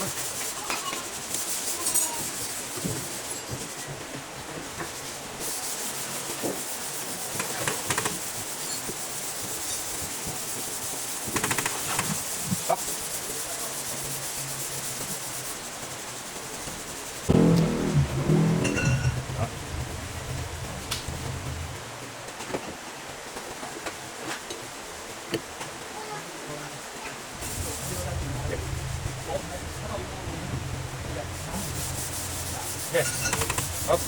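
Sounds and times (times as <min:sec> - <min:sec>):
steady hiss: 0:00.0 - 0:34.0
rubbing and scraping: 0:17.3 - 0:21.8, 0:27.3 - 0:34.0.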